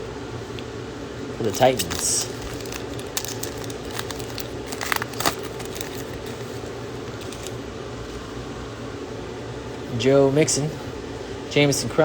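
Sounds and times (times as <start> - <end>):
low room hum: 0.0 - 12.0
trading cards being handled: 1.4 - 7.6.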